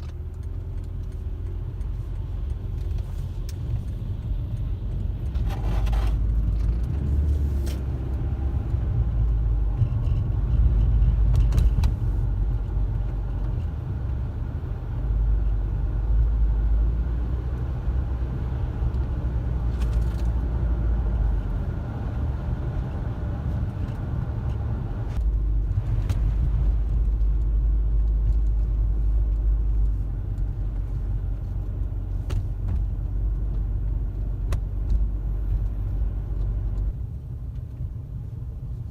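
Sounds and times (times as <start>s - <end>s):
car engine rumble: 0.0s - 38.9s.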